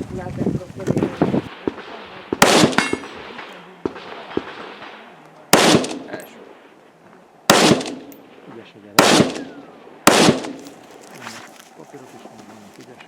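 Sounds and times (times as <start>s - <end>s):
rifle shots with echo: 1.5s - 6.5s, 7.5s - 10.8s.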